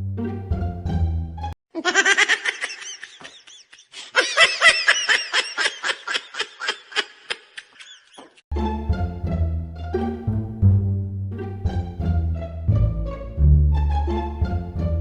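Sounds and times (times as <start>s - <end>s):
sped-up high-pitched laughter: 1.7s - 8.4s.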